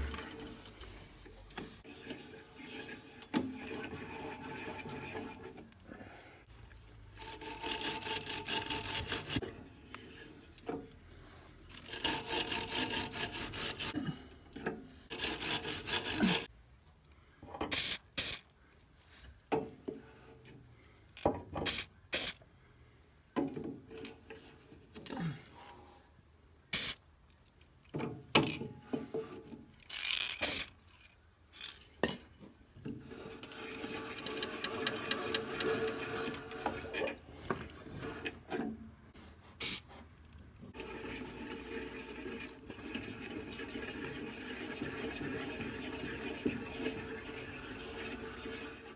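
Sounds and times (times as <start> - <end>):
hand tool scraping: 0.0 - 6.2, 7.2 - 10.8, 11.7 - 16.5, 32.9 - 48.9.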